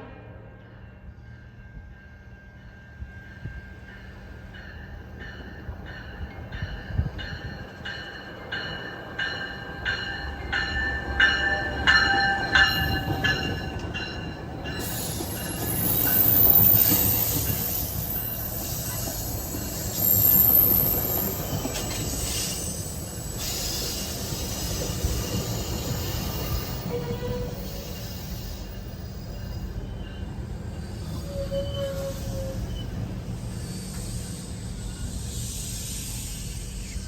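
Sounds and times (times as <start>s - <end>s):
train rolling into station: 0.0s - 37.0s
high wheel squeal: 14.6s - 37.0s.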